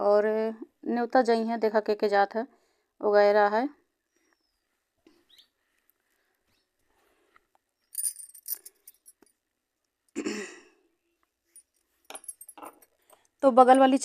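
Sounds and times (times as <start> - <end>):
utensils clinking and rattling: 8.0 - 9.2, 11.6 - 13.2.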